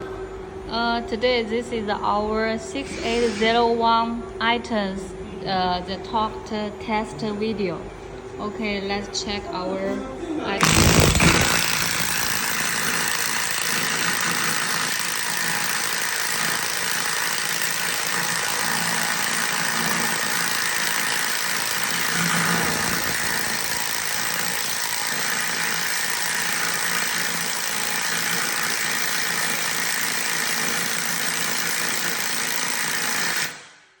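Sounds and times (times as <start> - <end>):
impact wrench running: 10.6 - 34.0.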